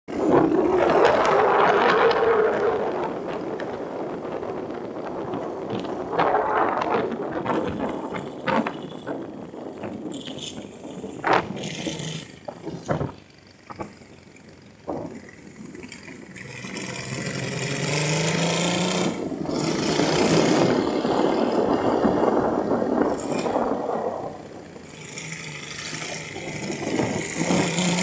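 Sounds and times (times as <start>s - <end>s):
engine revving: 11.2s - 12.9s, 16.3s - 28.0s.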